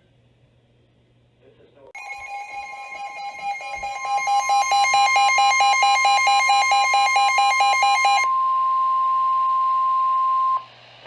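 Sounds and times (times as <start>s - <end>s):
steady high-pitched alarm tone: 2.0s - 10.6s
warbling electronic alarm beeping: 2.0s - 10.6s.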